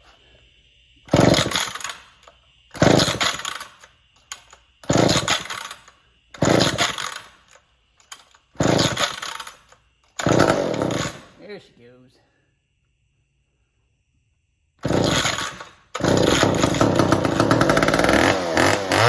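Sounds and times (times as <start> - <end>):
chainsaw engine turning over: 1.1 - 11.4, 14.8 - 19.0.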